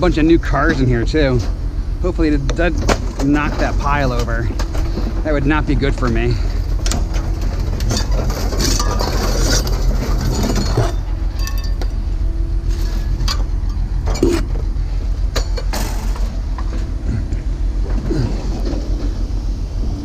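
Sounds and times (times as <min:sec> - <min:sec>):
engine rumbling: 0:00.0 - 0:20.0
scrap metal clinking: 0:06.4 - 0:12.1, 0:12.7 - 0:14.6.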